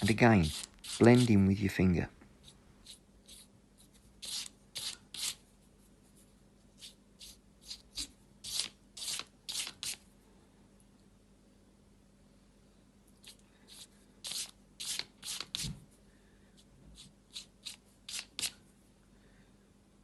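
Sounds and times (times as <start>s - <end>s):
rubbing strokes on paper: 0.0s - 1.4s, 2.4s - 10.0s.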